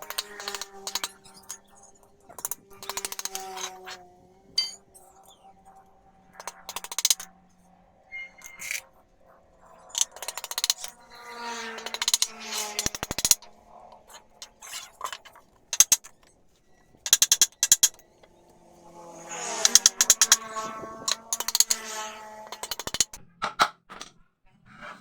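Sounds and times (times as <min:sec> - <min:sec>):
metal hardware clinking: 0:04.6 - 0:04.8.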